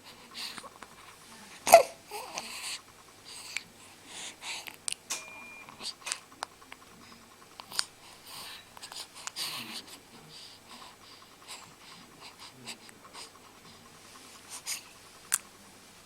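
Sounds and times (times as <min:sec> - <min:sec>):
baby snuffling breaths: 0:00.0 - 0:04.9, 0:07.0 - 0:15.4
baby sneezing: 0:01.7 - 0:02.0.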